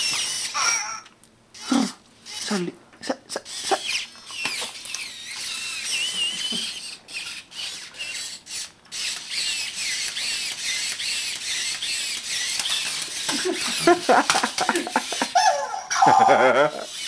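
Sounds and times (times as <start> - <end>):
high-pitched warbling squeaks: 0.0 - 1.0, 15.4 - 17.0
toy gear motors whirring: 0.0 - 2.7, 3.3 - 17.0.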